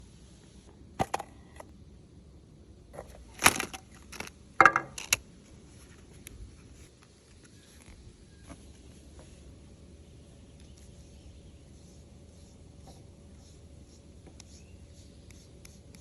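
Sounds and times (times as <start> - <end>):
crinkling rustles: 3.0 - 9.3
plastic capsule clicks: 3.4 - 5.2.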